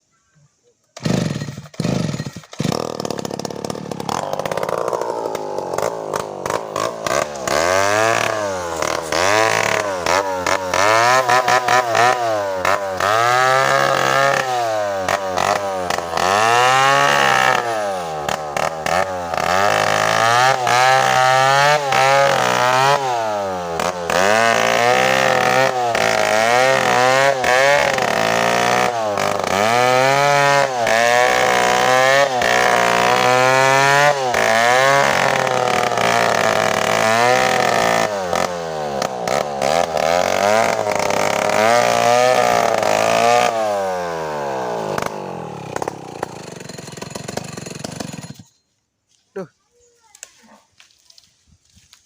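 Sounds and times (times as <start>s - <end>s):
chainsaw engine revving: 1.0s - 48.6s.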